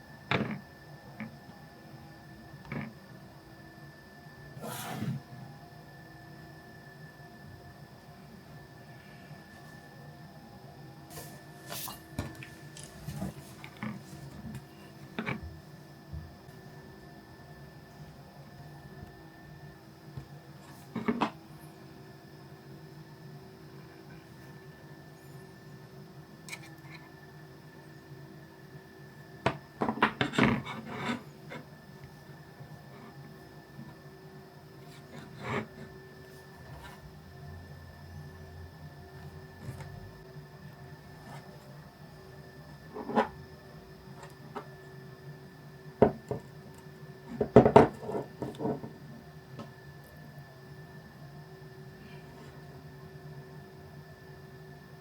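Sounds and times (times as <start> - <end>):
faint hum: 0.0 - 55.0
smartphones knocking on hard surface: 47.4 - 48.0.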